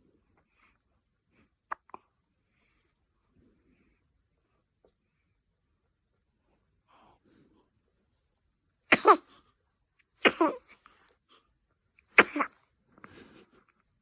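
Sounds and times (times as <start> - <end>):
baby sneezing: 8.9 - 9.4, 10.2 - 10.8, 12.1 - 12.6.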